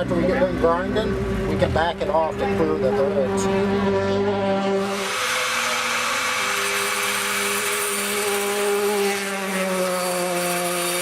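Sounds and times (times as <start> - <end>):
electric grinder whine: 4.8 - 11.0
hiss of grinding: 4.9 - 11.0.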